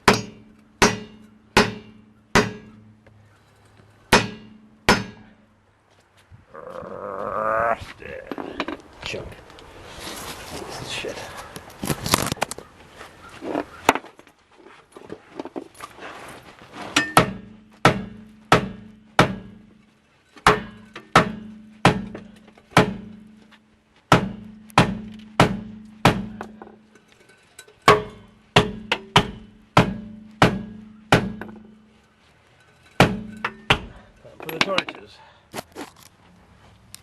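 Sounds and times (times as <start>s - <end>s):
hammer blows on metal: 4.1s - 5.4s.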